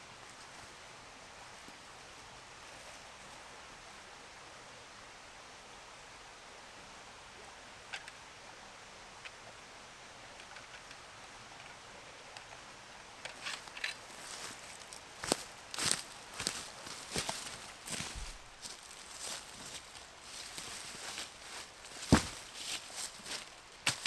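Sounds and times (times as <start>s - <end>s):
rustling and crunching leaves: 0.0s - 3.6s, 13.2s - 24.0s
faint outdoor hiss: 0.0s - 24.0s.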